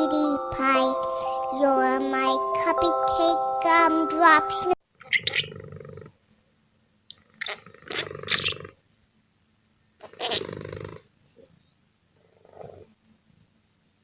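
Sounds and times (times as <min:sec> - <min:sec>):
cat growling: 0:05.3 - 0:06.2, 0:07.2 - 0:08.8, 0:10.0 - 0:11.0, 0:12.2 - 0:13.0.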